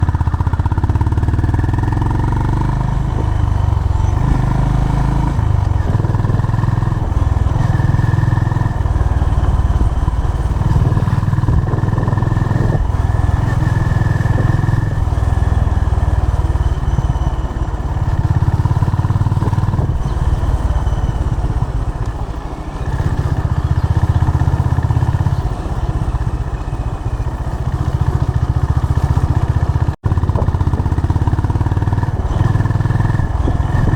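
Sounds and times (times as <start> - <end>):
motorcycle engine running: 0.0 - 33.9.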